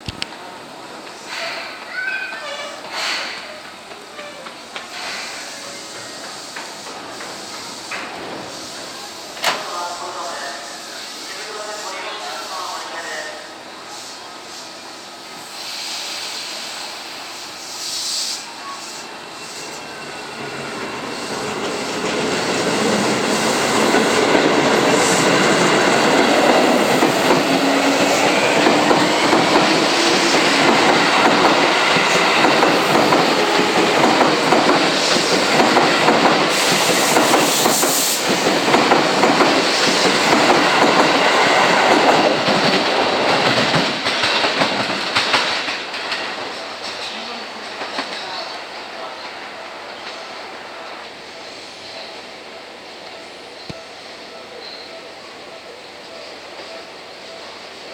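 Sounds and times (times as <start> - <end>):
electric train accelerating: 14.4 - 47.0
wheels clacking over rail joints: 21.4 - 48.4.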